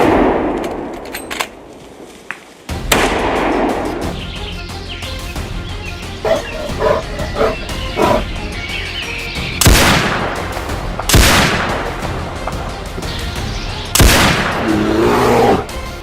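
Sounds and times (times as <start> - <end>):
rifle shots echoing: 0.0 - 1.7, 2.8 - 4.0, 9.6 - 12.0, 14.0 - 14.7
background music: 2.5 - 16.0
dog barks: 6.2 - 8.2.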